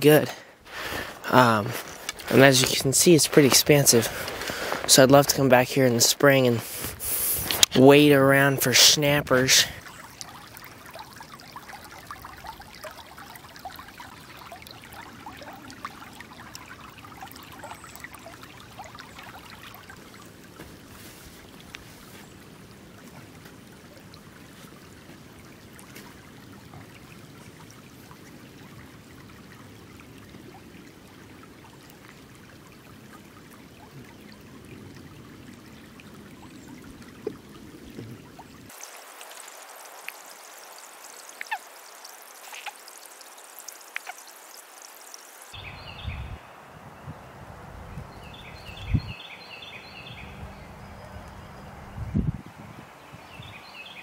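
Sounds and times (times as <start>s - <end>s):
water trickling: 0.0s - 54.0s
thin hiss: 6.6s - 7.7s.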